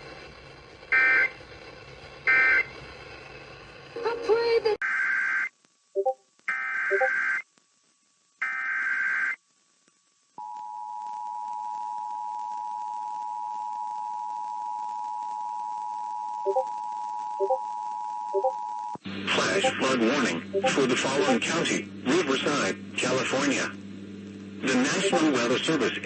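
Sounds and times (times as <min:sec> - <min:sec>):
two-tone alert signal: 0:06.0 - 0:06.2, 0:06.9 - 0:07.2, 0:16.5 - 0:16.7, 0:18.4 - 0:18.6, 0:19.6 - 0:19.8, 0:20.6 - 0:21.5, 0:25.0 - 0:25.4.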